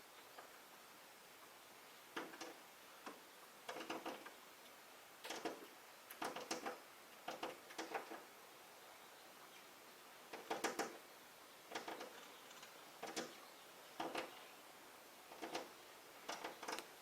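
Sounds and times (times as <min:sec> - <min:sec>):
rapid clicks and scratching: 0:02.2 - 0:04.4, 0:05.2 - 0:08.3, 0:10.3 - 0:11.0, 0:11.7 - 0:13.4, 0:14.0 - 0:14.4, 0:15.3 - 0:16.9.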